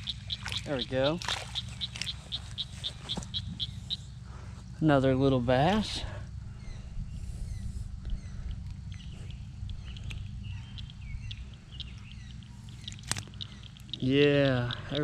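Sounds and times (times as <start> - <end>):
faint chirping animal calls: 0.0 - 4.5, 6.0 - 15.0
low rumble: 1.7 - 14.7
small clicks: 8.5 - 15.0.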